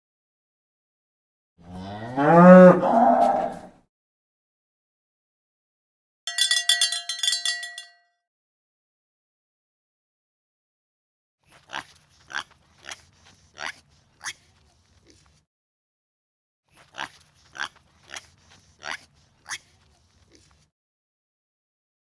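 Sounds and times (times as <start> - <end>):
animal's short sharp calls: 16.7 - 20.6.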